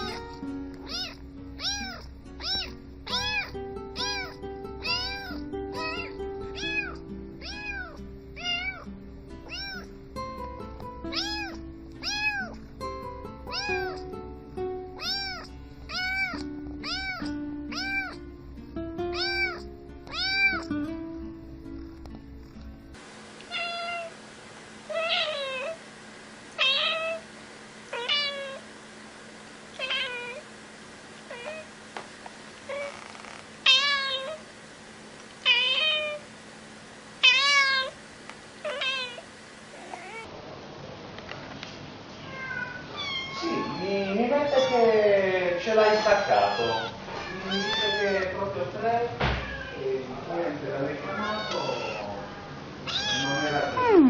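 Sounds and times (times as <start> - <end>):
cat meowing: 0.0 - 10.0, 11.1 - 12.6, 13.5 - 14.1, 15.0 - 18.2, 19.1 - 20.7, 23.5 - 24.2, 24.9 - 25.8, 26.6 - 27.2, 27.9 - 28.6, 29.8 - 30.4, 31.3 - 31.7, 32.7 - 34.4, 35.4 - 36.2, 37.2 - 38.0, 38.6 - 39.2, 39.8 - 40.3, 42.2 - 45.0, 45.6 - 48.4, 49.3 - 49.9, 51.0 - 54.0
background music: 0.0 - 23.0.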